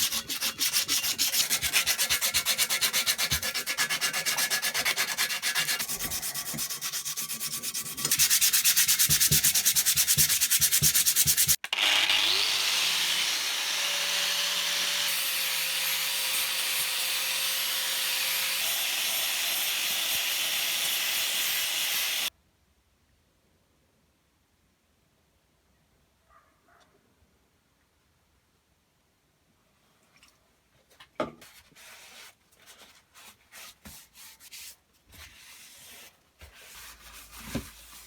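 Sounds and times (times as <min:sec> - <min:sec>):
hand sanding strokes: 0:00.0 - 0:11.6, 0:35.4 - 0:38.0
small power tool running: 0:11.6 - 0:22.3.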